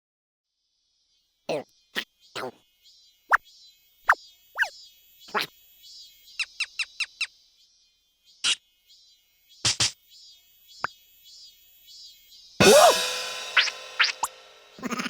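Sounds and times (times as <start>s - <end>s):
cartoon squeaks and pops: 12.6s - 13.0s, 13.6s - 15.0s.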